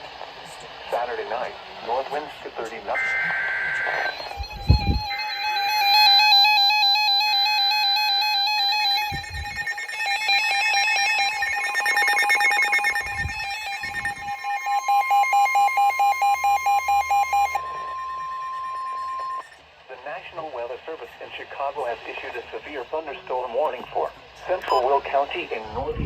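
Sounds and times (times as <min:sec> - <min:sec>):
warbling data bursts: 0:02.8 - 0:19.6, 0:24.6 - 0:25.1
rapid electronic beeping: 0:02.9 - 0:19.6, 0:24.6 - 0:24.9
steady long alert tone: 0:02.9 - 0:19.6.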